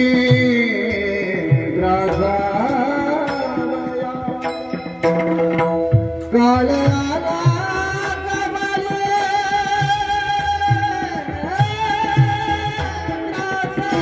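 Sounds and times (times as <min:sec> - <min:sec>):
drum strokes: 0:00.0 - 0:14.0
man singing in high voice: 0:00.0 - 0:14.0.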